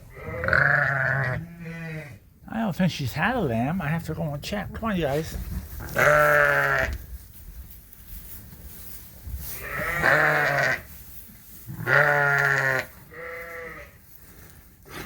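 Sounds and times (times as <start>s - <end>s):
sheep bleating: 0.1s - 2.2s, 5.9s - 7.0s, 9.6s - 10.8s, 11.8s - 13.9s.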